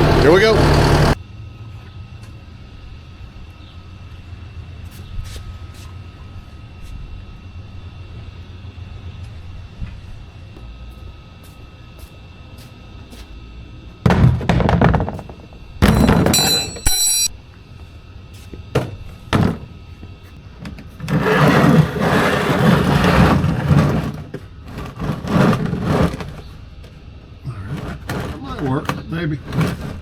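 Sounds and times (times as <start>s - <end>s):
heavy metal parts clunking: 15.8s - 17.3s
ringing metallic scrape: 15.8s - 17.4s.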